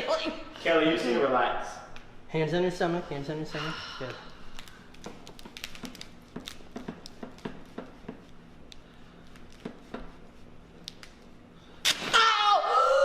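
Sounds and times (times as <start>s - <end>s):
woman crying out: 12.1s - 13.0s.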